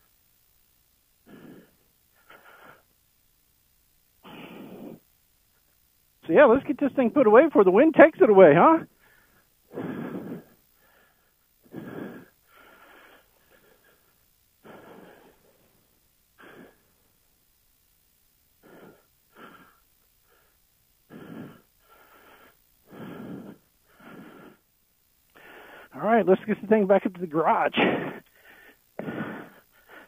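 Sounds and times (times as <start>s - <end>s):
person breathing hard: 1.2s - 2.9s, 4.2s - 5.1s, 9.0s - 15.8s, 16.4s - 17.1s, 18.6s - 24.7s, 25.3s - 26.0s, 27.8s - 30.0s.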